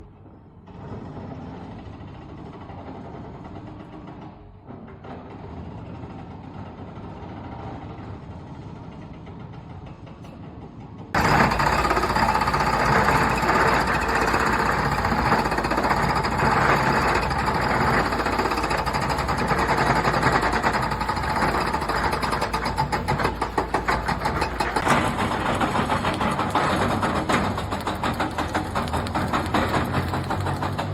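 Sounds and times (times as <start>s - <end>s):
steady machinery noise: 0.0s - 30.9s
jackhammer hammering: 11.2s - 30.9s.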